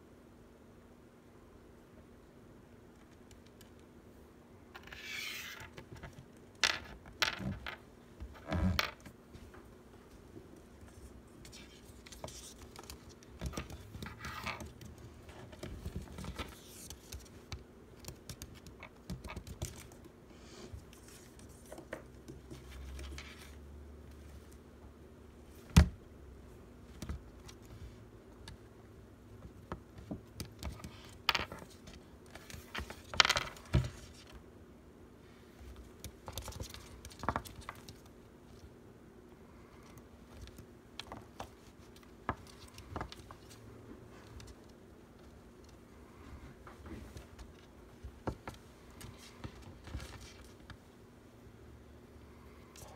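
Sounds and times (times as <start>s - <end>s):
small pet scratching and nibbling: 10.9s - 20.1s.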